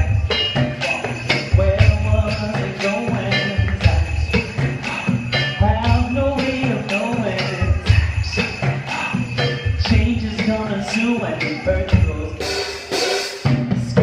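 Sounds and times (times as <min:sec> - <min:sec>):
wavering pitched melody: 0:00.0 - 0:13.6
jingling bells: 0:00.0 - 0:14.0.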